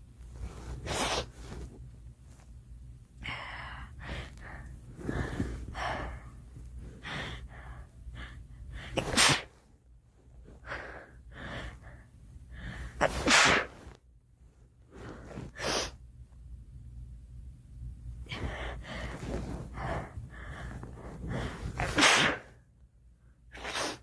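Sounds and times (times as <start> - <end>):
girl sneezing: 9.0 - 9.5, 13.0 - 13.8, 21.8 - 22.5.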